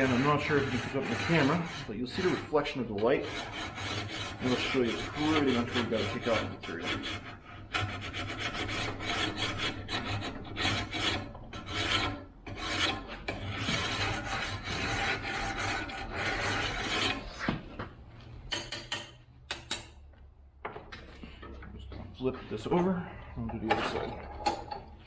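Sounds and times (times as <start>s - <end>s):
file rasping on chainsaw bar: 0.0s - 17.3s.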